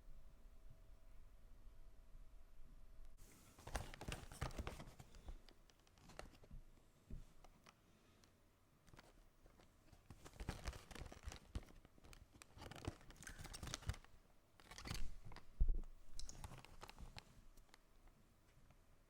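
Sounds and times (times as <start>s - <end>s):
plastic packaging crinkling: 3.6s - 6.4s, 9.9s - 15.5s, 16.1s - 17.8s.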